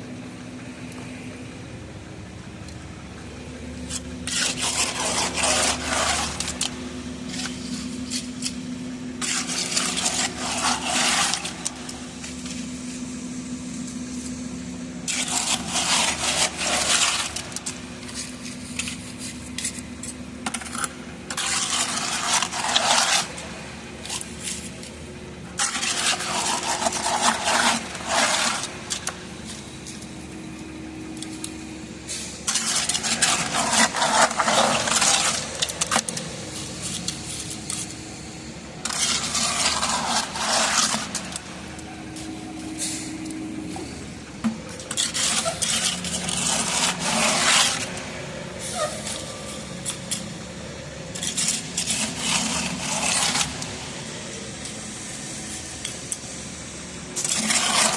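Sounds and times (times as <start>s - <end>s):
engine drone: 0.0s - 57.9s
hand tool scraping wet concrete: 3.8s - 54.8s, 57.2s - 57.9s.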